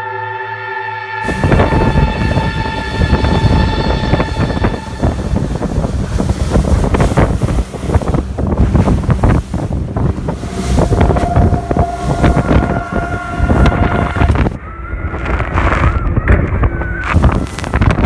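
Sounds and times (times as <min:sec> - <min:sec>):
wavering high tone: 0:00.0 - 0:06.9, 0:10.0 - 0:17.4
strong wind buffeting microphone: 0:01.2 - 0:18.0.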